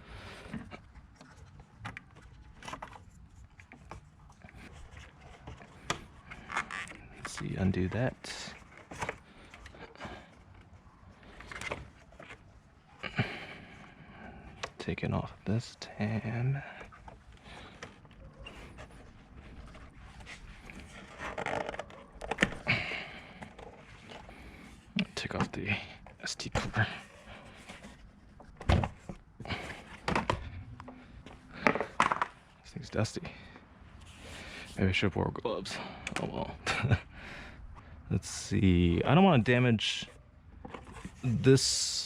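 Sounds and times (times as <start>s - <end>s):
plastic parts clicking and rubbing: 0.4s - 13.2s, 15.7s - 32.6s
plastic scraping: 16.7s - 25.4s
plastic parts clicking and knocking: 16.8s - 24.4s, 27.8s - 32.5s.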